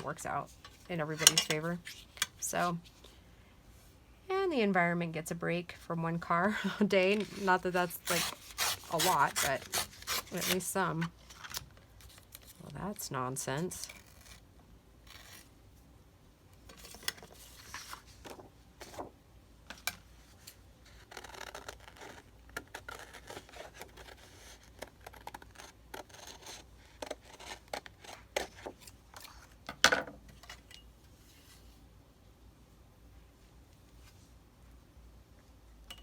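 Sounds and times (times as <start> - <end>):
rustling of craft materials: 6.2 - 14.4, 16.6 - 22.3.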